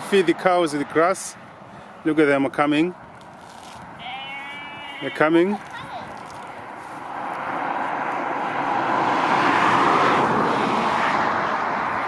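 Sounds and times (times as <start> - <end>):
distant engine rushing: 5.9 - 12.0.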